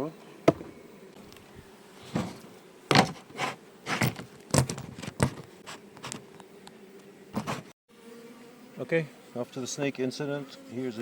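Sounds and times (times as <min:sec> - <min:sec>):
short scuffing noises: 0:07.4 - 0:07.7.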